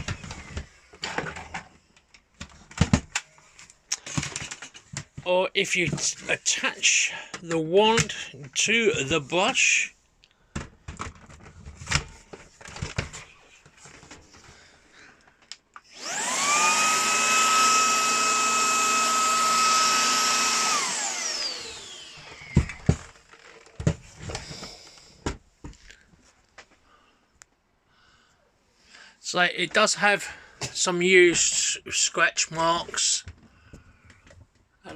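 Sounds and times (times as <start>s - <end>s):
handheld vacuum motor whine: 15.8s - 23.6s.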